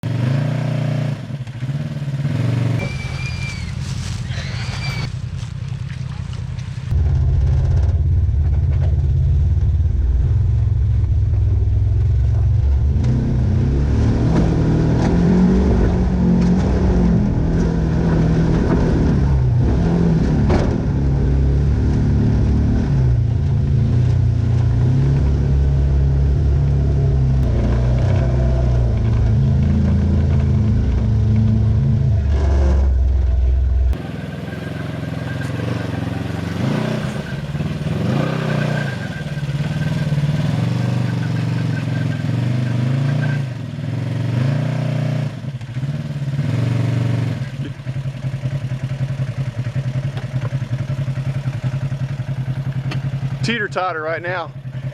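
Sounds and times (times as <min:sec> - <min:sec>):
off-road vehicle engine revving: 0:00.0 - 0:54.9.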